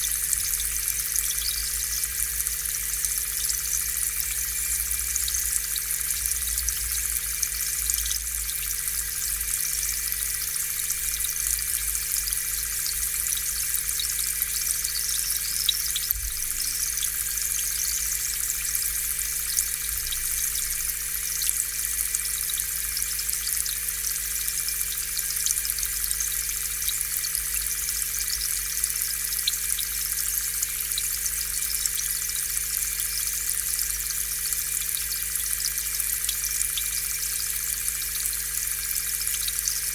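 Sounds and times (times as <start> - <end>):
air pump electric hum: 0.0 - 34.8
air bubbles fizzing in water: 12.8 - 23.7.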